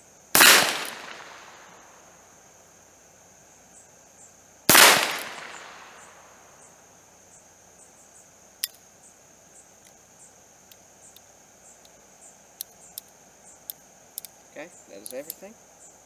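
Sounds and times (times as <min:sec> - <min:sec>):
insects trilling: 0:00.0 - 0:16.0
revolver gunshot with echo: 0:00.4 - 0:01.8, 0:04.7 - 0:06.3.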